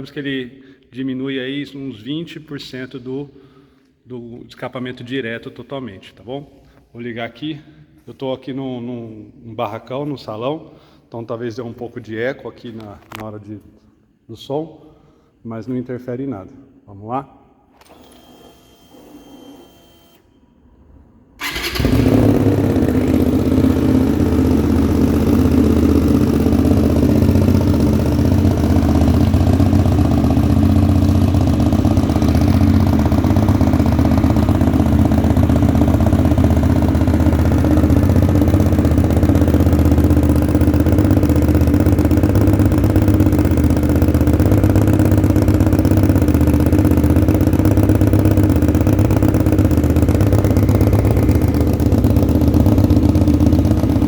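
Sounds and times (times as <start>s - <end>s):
motorcycle engine starting and idling: 21.4s - 54.0s.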